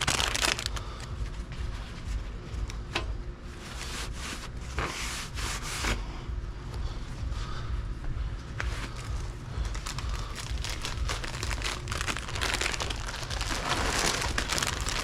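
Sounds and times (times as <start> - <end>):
plastic snack bags crinkling: 0.0 - 1.1, 9.0 - 15.0
low steady rumble: 0.0 - 15.0.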